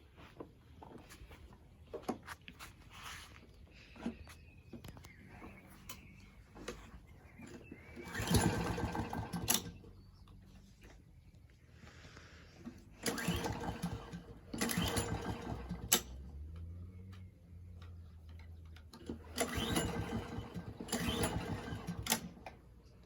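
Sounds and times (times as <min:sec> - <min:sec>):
lawn mower recoil starter pulls: 0:05.0 - 0:10.0, 0:12.6 - 0:16.7, 0:18.4 - 0:22.8.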